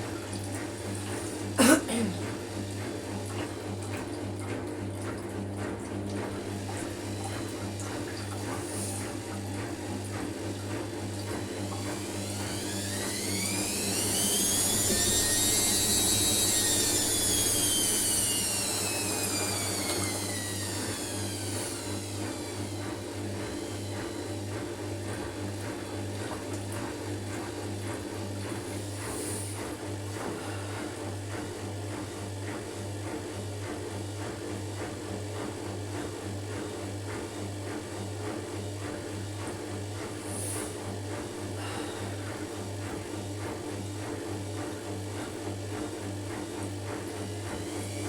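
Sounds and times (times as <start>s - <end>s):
washing machine humming: 0.0s - 48.0s
washing machine motor whine: 0.0s - 48.0s.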